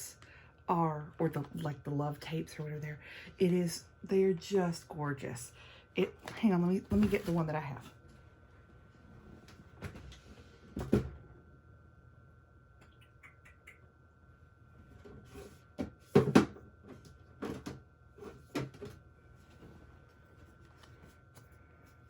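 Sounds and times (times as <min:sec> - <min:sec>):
objects knocking and clattering: 0:17.4 - 0:17.8.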